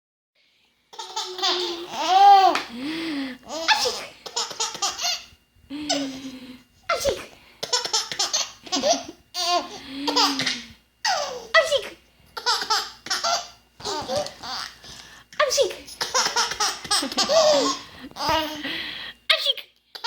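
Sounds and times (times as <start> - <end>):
baby giggling and squealing: 16.0 - 18.6.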